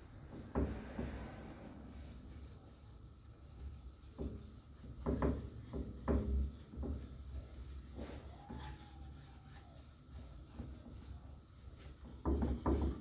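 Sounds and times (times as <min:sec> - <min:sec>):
cloth rag rubbing wood: 0:00.0 - 0:13.0.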